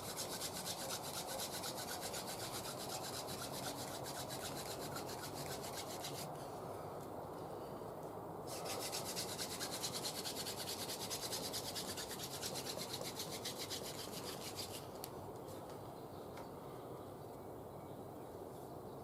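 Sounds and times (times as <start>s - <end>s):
wooden spindle rasping on board: 0.0s - 6.3s, 8.5s - 14.8s.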